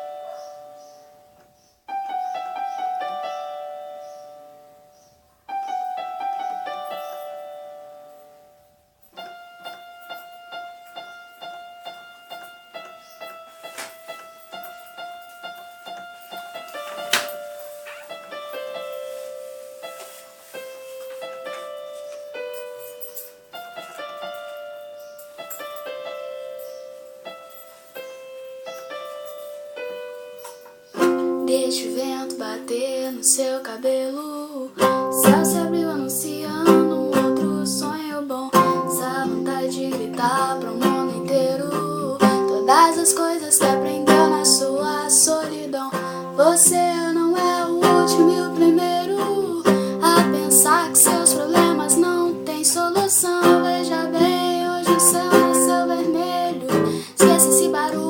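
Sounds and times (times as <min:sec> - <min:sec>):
piano-like keyboard melody: 0:00.0 - 0:58.0
piano playing quick notes: 0:09.2 - 0:33.4.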